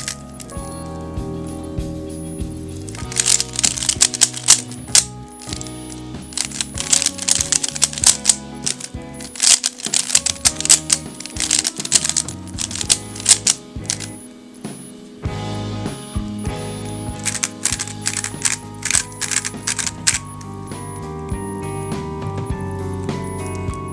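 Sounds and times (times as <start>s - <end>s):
puzzle cubes clicking: 0.0s - 0.6s, 2.9s - 14.2s, 16.5s - 21.1s.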